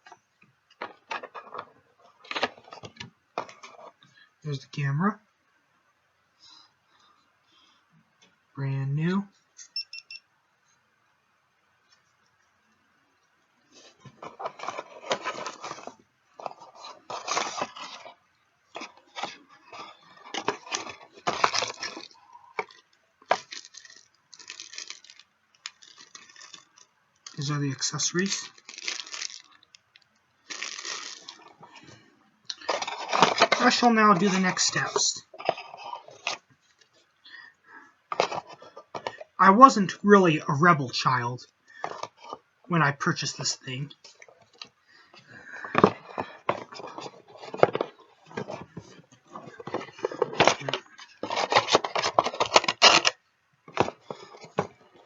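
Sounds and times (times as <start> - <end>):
packaging rustling and crinkling: 13.8 - 27.5, 28.4 - 31.9, 32.5 - 37.0, 38.1 - 39.3, 45.5 - 55.0.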